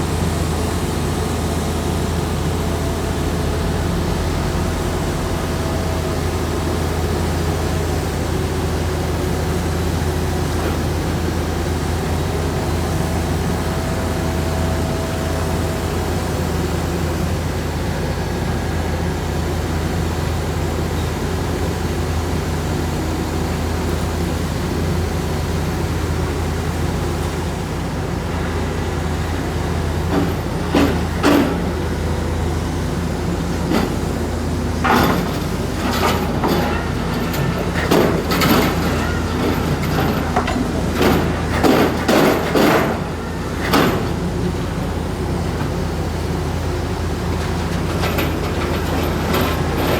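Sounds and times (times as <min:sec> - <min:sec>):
diesel drilling rig humming: 0:00.0 - 0:49.9.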